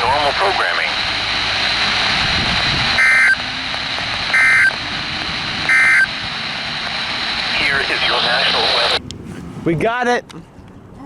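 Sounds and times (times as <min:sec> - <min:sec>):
steady hiss: 0:00.0 - 0:09.0
digital data tone bursts: 0:03.0 - 0:03.5, 0:04.2 - 0:04.8, 0:05.7 - 0:06.2.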